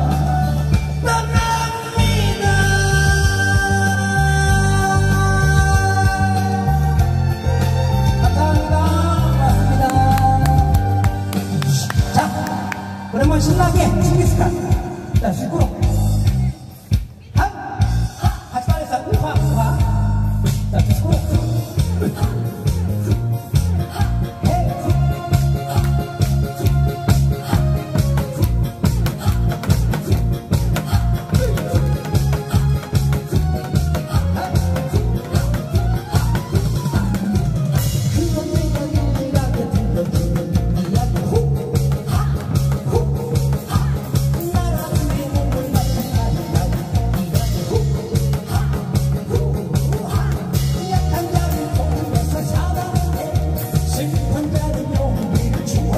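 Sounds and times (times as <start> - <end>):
bass line: 0.0 - 55.9
loud amplified band music: 0.0 - 55.9
steady drum beat: 0.0 - 55.9.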